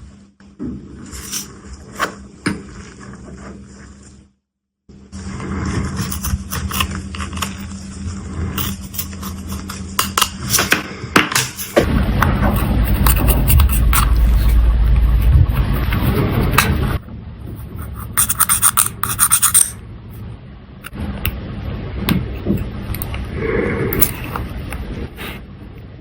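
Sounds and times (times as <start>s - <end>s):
hand tools scraping: 8.5s - 10.7s, 17.6s - 19.8s.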